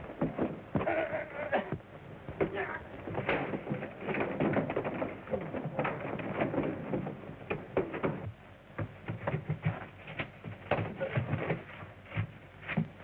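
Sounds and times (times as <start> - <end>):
knocks and thumps: 0.0 - 13.0.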